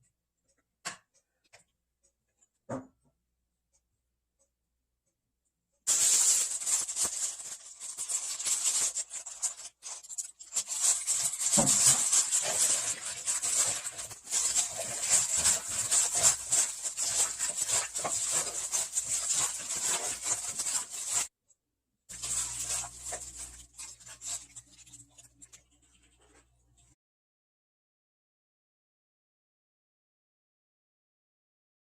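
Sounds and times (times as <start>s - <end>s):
food rustling and squishing in bowl: 5.9s - 21.3s, 22.1s - 27.0s.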